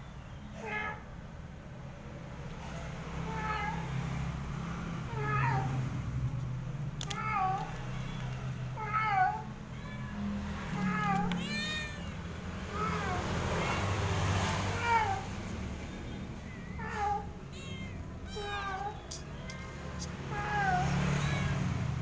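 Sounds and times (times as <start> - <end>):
cat meowing: 5.1 - 6.0, 8.8 - 13.8, 15.9 - 22.0.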